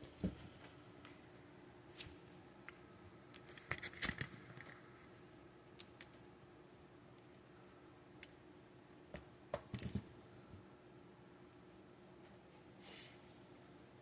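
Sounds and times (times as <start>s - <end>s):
plastic parts clicking and rattling: 3.3s - 4.8s.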